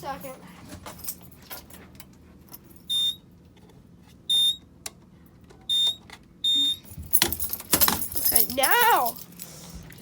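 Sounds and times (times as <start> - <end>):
fire alarm panel buzzer beeps: 2.9 - 3.2, 4.3 - 4.7, 5.7 - 6.9.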